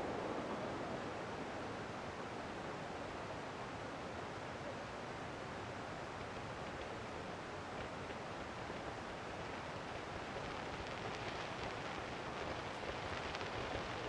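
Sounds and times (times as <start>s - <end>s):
faint crackles: 5.9s - 14.0s.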